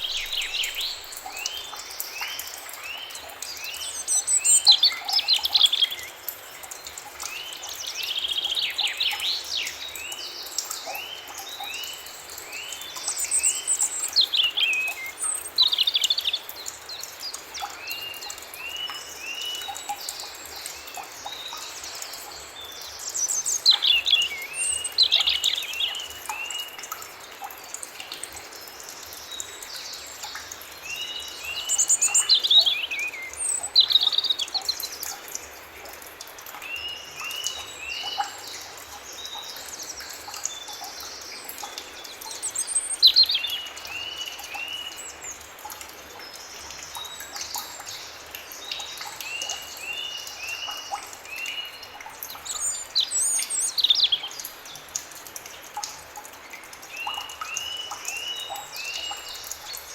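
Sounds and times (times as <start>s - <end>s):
distant birdsong: 0.0s - 3.5s.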